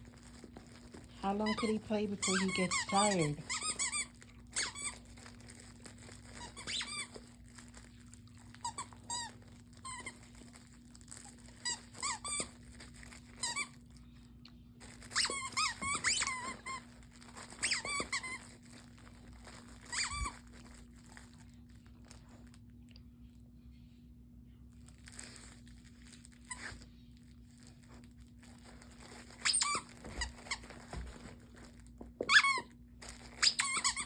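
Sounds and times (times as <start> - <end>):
dog toy squeaking: 1.4 - 5.0, 6.3 - 7.2, 15.1 - 18.6, 19.8 - 20.4, 29.2 - 31.0, 32.2 - 32.7, 33.3 - 34.0.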